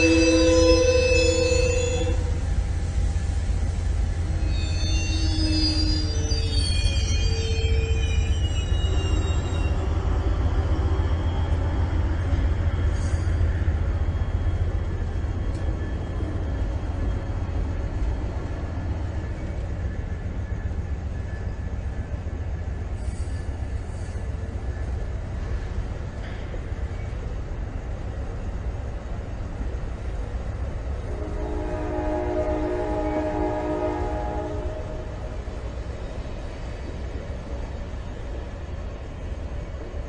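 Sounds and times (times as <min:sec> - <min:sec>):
train low rumble: 0:00.0 - 0:40.0
train wheel squeal: 0:00.0 - 0:40.0.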